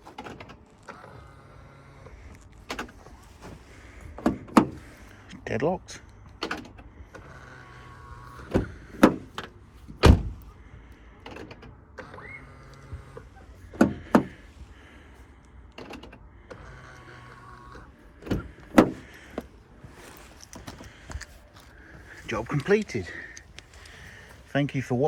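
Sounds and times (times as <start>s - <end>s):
door lock clunks: 0.0s - 5.3s, 6.0s - 14.5s, 15.6s - 19.6s
central locking motor whirring: 0.0s - 24.5s.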